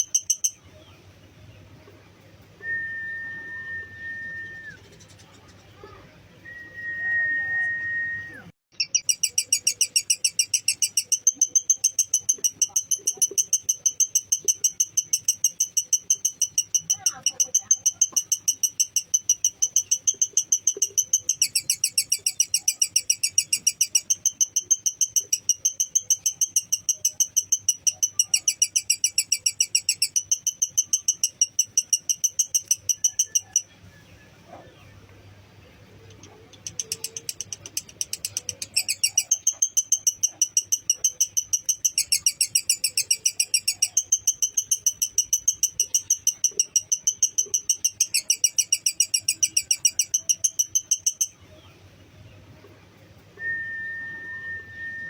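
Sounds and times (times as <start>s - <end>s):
lovebird chattering song: 0.0s - 1.6s, 8.7s - 34.2s, 35.8s - 51.8s.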